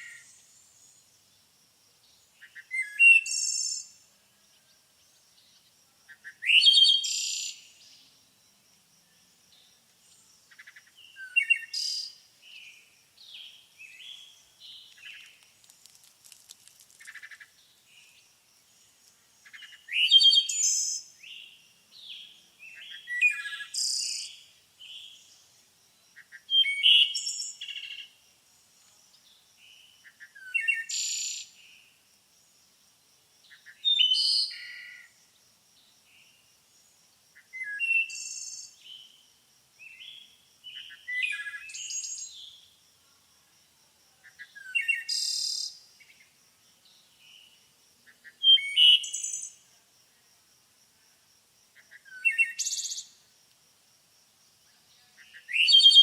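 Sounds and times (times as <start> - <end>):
bird singing chirps: 2.1 - 4.8, 5.4 - 8.2, 9.2 - 15.4, 19.5 - 25.4, 44.3 - 49.6, 54.8 - 56.0.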